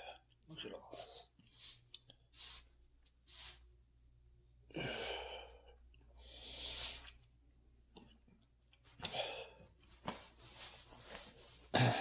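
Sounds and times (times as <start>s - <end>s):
man sighing and breathing heavily: 11.7s - 12.0s.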